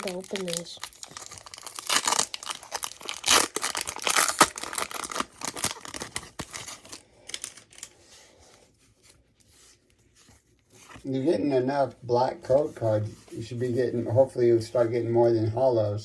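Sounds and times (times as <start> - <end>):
foil wrapper tearing and crinkling: 0.0 - 8.0.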